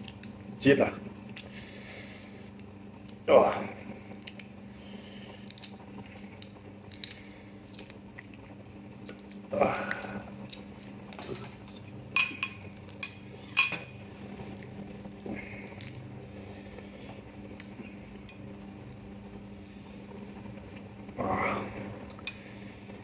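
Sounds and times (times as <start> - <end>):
cutlery clinking against dishes: 12.2 - 14.0.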